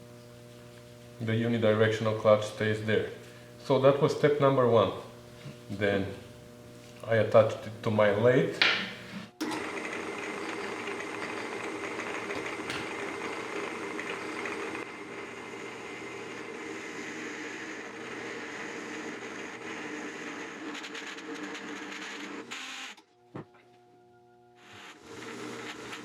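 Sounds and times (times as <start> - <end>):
metal lathe running: 8.7 - 22.8.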